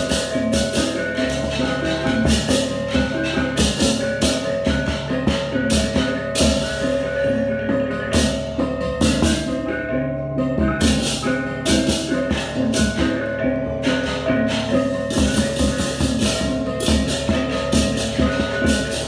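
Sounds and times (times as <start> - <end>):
cymbals crashing: 0.0 - 9.8, 10.7 - 19.0
driving drums: 0.0 - 19.0
gamelan processional music: 0.0 - 19.0
metallic ringing gongs: 0.0 - 19.0.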